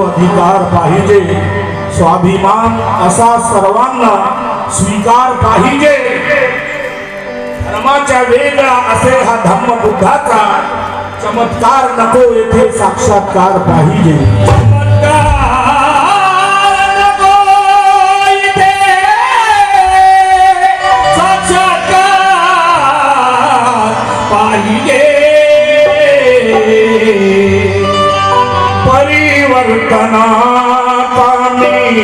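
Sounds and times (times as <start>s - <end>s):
instrumental accompaniment: 0.0s - 32.0s
person singing: 13.8s - 32.0s.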